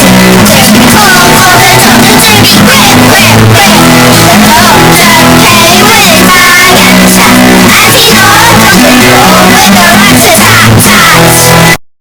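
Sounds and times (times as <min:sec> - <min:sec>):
cartoon voices singing: 0:00.0 - 0:11.8
guitar accompaniment: 0:00.0 - 0:11.8.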